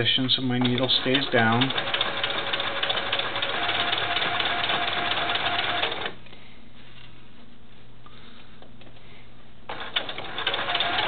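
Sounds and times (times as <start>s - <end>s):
sewing machine stitching: 0.6s - 6.2s, 9.7s - 11.0s
faint low hum: 3.4s - 9.8s.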